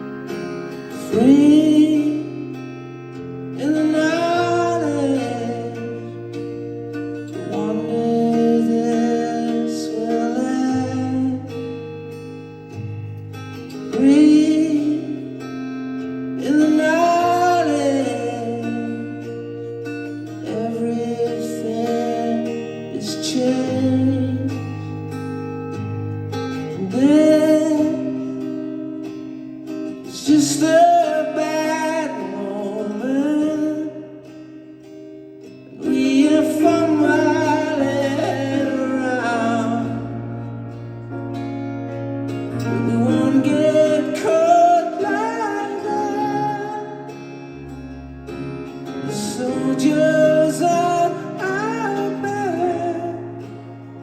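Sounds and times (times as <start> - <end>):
acoustic guitar: 0.0 - 54.0
person singing: 1.0 - 2.7, 3.5 - 6.3, 7.2 - 11.7, 13.9 - 15.5, 16.4 - 19.2, 20.4 - 24.8, 30.0 - 34.2, 35.8 - 40.3, 42.5 - 47.7, 48.9 - 54.0.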